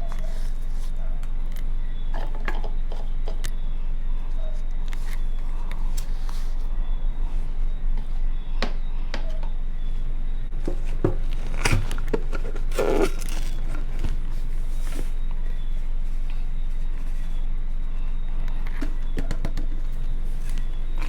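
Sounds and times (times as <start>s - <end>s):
low electrical hum: 0.0s - 21.0s
rustling scrape: 10.8s - 17.4s.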